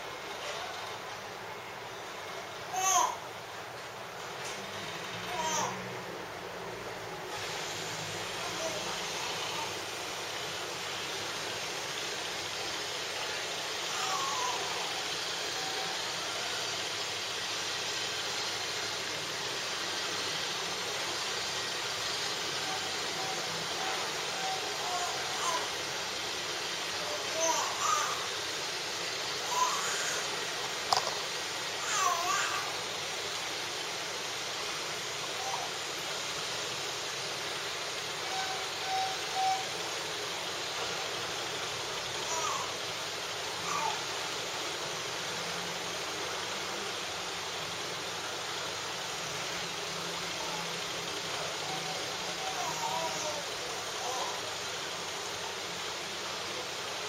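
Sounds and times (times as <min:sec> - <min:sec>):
steady background hiss: 0:00.0 - 0:57.0
baby cooing: 0:02.7 - 0:03.3, 0:05.3 - 0:05.9, 0:13.9 - 0:15.0, 0:24.4 - 0:25.7, 0:27.0 - 0:28.3, 0:29.4 - 0:31.2, 0:31.8 - 0:32.8, 0:43.6 - 0:44.1, 0:51.7 - 0:54.5.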